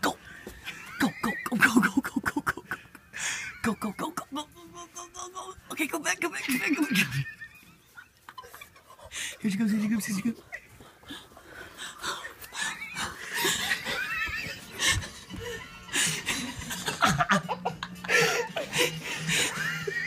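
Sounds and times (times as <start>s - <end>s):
people laughing and shrieking: 0.5s - 4.9s, 6.3s - 9.1s, 11.8s - 20.0s.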